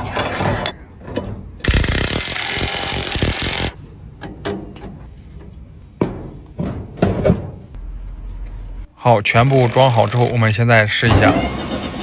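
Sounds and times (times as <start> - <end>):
parts being handled: 0.0 - 8.7.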